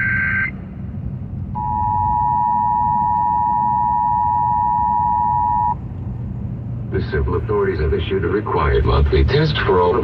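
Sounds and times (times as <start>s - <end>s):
low rumble: 0.0s - 10.0s
two-tone alert signal: 1.6s - 5.8s.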